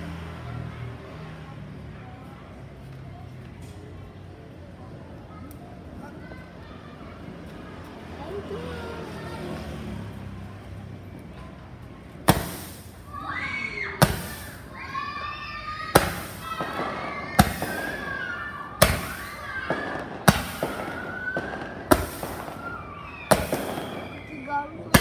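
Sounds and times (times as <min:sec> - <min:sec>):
fireworks bangs: 0:12.2 - 0:25.0.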